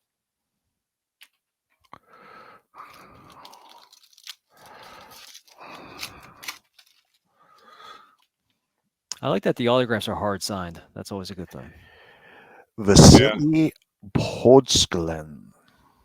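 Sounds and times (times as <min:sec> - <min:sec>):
foil wrapper tearing and crinkling: 0:03.4 - 0:07.2.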